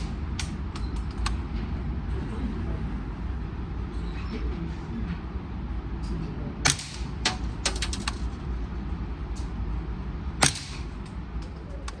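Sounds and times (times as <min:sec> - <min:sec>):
steady low rumble: 0:00.0 - 0:12.0
suppressed rifle shots: 0:10.4 - 0:11.0.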